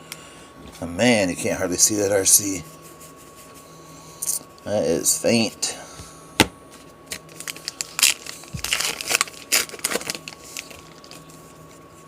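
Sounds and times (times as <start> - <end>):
wrapper crinkling and cards rustling: 7.1 - 11.8.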